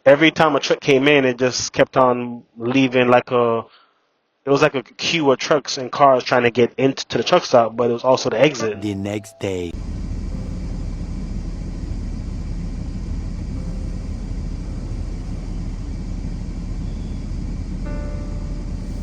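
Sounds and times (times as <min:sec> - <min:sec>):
semi-truck engine rumble: 0:09.7 - 0:19.0.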